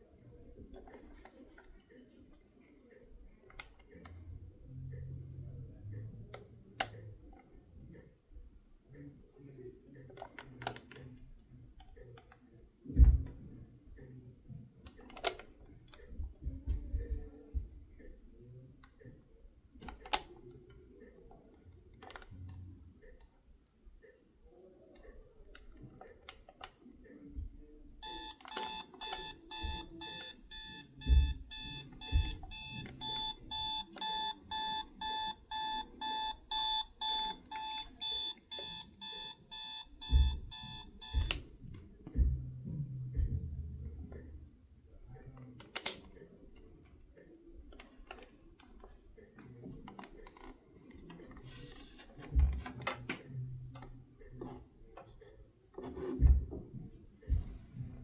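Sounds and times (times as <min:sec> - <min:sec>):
pulsing electronic alarm beep: 0:28.0 - 0:41.3.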